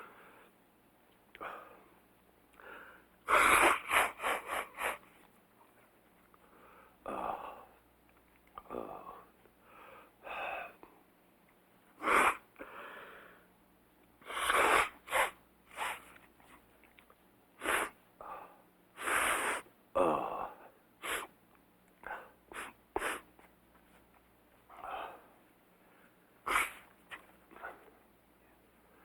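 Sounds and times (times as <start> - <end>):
person blowing nose: 3.3 - 5.0, 12.0 - 12.4, 14.2 - 16.1, 17.6 - 18.0, 19.0 - 19.7, 21.0 - 21.3, 22.5 - 23.3, 26.5 - 26.9.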